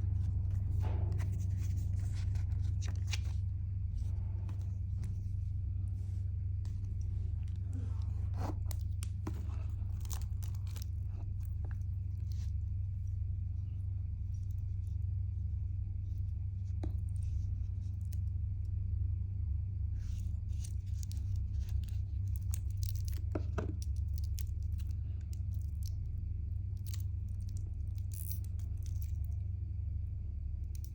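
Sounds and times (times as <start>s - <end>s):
steady low hum: 0.0s - 30.9s
packaging clicks and scrapes: 6.7s - 12.4s.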